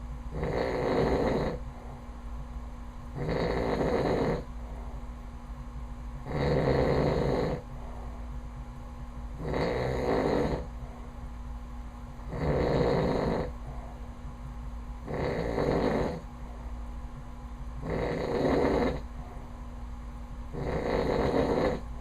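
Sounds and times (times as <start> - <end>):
man snoring: 0.3 - 1.6, 3.2 - 4.5, 6.2 - 7.6, 9.4 - 10.7, 12.3 - 13.6, 15.1 - 16.3, 17.8 - 19.1, 20.5 - 21.9.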